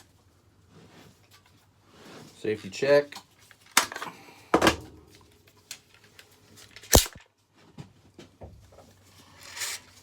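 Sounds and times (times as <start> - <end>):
rifle action metallic clicks: 6.9 - 7.2.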